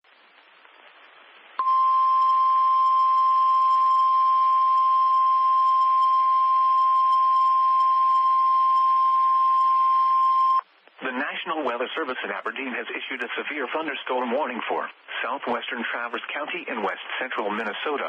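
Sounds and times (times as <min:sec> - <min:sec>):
faint static hiss: 0:00.0 - 0:18.0
loud steady alarm beep: 0:01.6 - 0:10.6.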